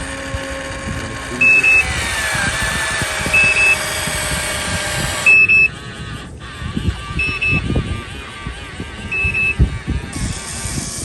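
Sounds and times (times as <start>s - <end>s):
faint whine: 0.0s - 11.0s
short high double beeps: 9.1s - 9.6s.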